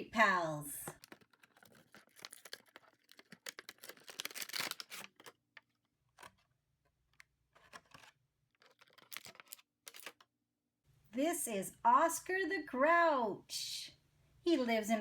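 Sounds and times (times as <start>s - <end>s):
packaging clicks and crinkles: 0.9s - 10.3s.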